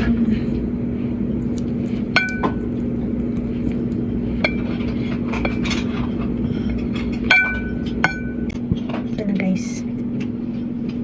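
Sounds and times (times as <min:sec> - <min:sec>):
steady low hum: 0:00.0 - 0:11.0
utensil clinking against dish: 0:04.4 - 0:08.6.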